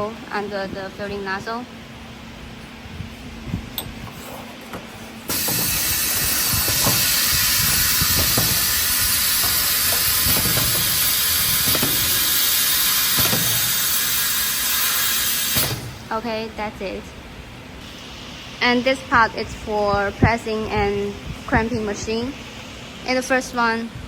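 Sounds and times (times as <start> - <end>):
loud hiss of air: 5.3 - 16.2, 17.8 - 20.1
light machine knocks: 6.5 - 8.8, 9.4 - 12.4, 13.1 - 13.8.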